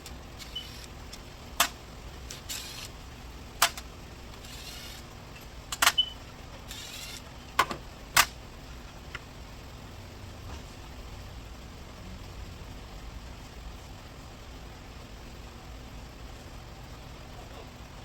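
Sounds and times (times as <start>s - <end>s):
scraping and rustling: 0.4s - 3.0s, 4.4s - 6.0s, 6.6s - 7.3s.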